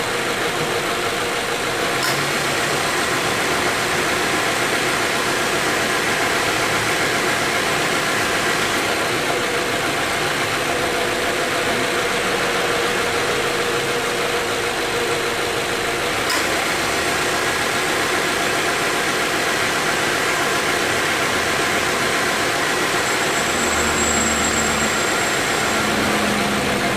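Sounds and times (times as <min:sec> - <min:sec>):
car engine idling: 0:00.0 - 0:26.9
short click: 0:02.0 - 0:02.3, 0:16.3 - 0:16.5.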